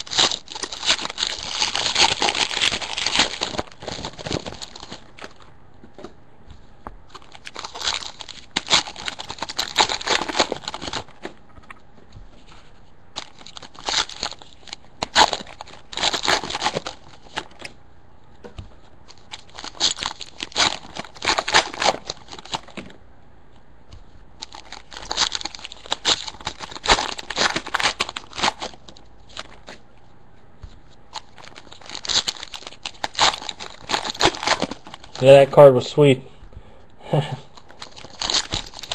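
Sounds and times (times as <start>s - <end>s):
foil wrappers crinkling and tearing: 0.0s - 5.5s, 7.1s - 11.4s, 13.2s - 17.8s, 19.0s - 22.9s, 24.4s - 29.8s, 31.1s - 35.6s, 37.5s - 38.9s
cards being handled: 0.0s - 17.8s, 18.4s - 23.0s, 30.6s - 35.3s, 37.5s - 38.9s.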